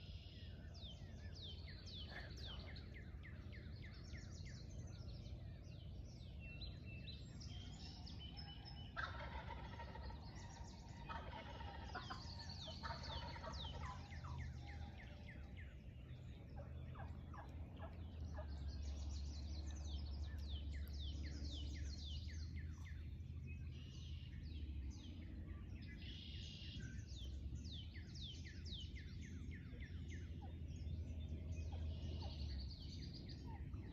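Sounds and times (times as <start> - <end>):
songbirds chirping: 0.0 - 33.9
wild turkey gobbling: 2.0 - 2.8, 8.6 - 15.5, 16.5 - 18.7.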